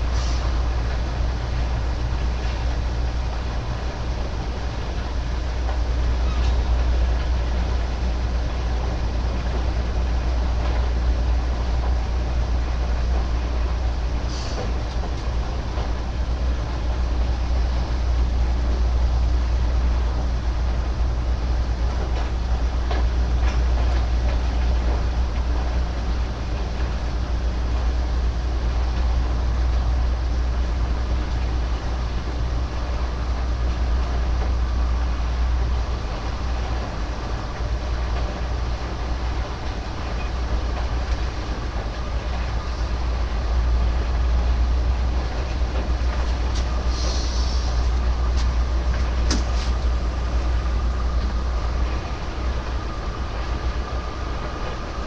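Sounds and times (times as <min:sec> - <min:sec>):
loud mechanical rumble: 0:00.0 - 0:55.0.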